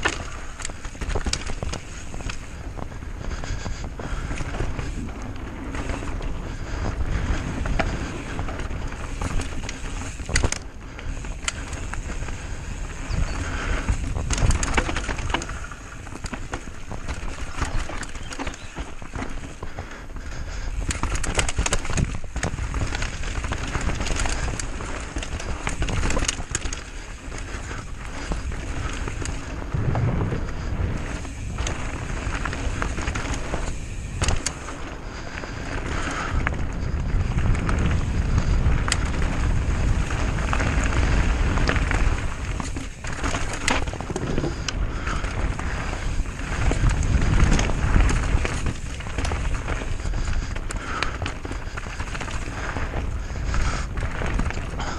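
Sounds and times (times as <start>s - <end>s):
bike frame and chain rattling: 0.0s - 54.9s
tyres crunching over dirt: 0.0s - 54.9s
steady low rumble: 18.5s - 54.9s.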